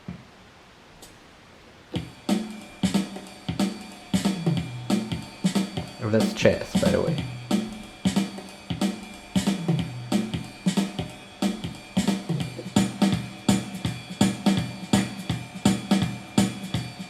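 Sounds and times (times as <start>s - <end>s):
guitar chords: 2.0s - 16.5s
programmed drum beat: 2.0s - 17.0s
walking bass line: 4.2s - 16.6s.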